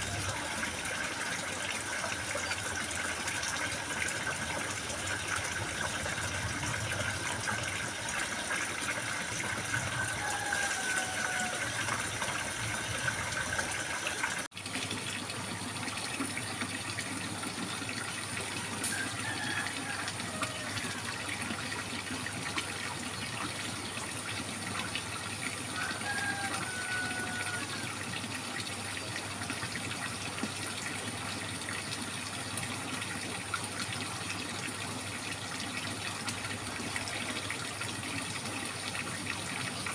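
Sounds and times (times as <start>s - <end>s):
babbling trickling water: 0.0s - 39.9s.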